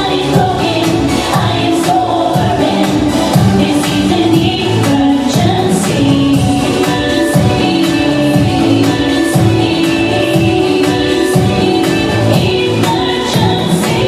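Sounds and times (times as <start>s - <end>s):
song with sung vocals and beat: 0.0s - 14.0s.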